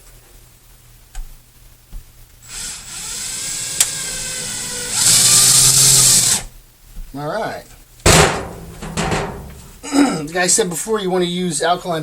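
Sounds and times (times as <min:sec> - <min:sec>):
power drill motor whine: 0:02.4 - 0:06.5.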